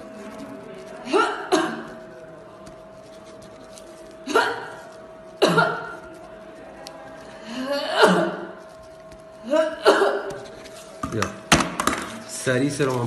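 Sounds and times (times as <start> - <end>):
woman coughing: 1.0 - 2.0, 4.2 - 4.8, 5.4 - 6.0, 7.7 - 8.5, 9.5 - 10.4.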